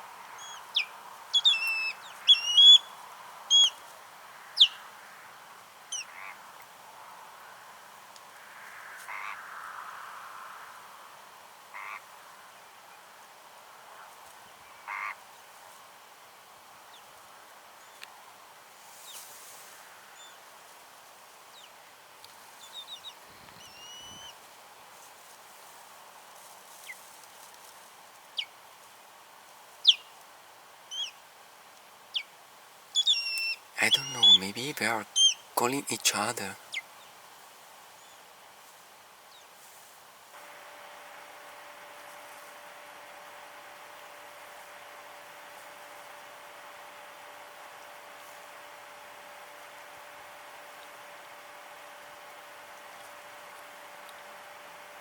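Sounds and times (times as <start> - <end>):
faint steady hiss: 0.0 - 55.0
high whistled bird calls: 0.4 - 2.9, 3.5 - 3.8, 23.6 - 24.3, 33.0 - 34.5, 35.1 - 35.4
birds calling: 0.4 - 3.8, 22.6 - 24.3, 33.0 - 37.0.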